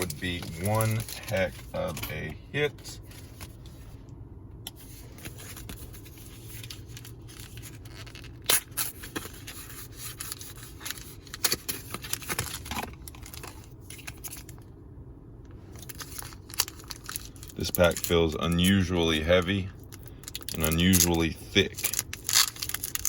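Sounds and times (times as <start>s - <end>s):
foil wrapper crinkling and tearing: 0.0s - 1.7s, 5.6s - 14.6s, 15.8s - 23.0s.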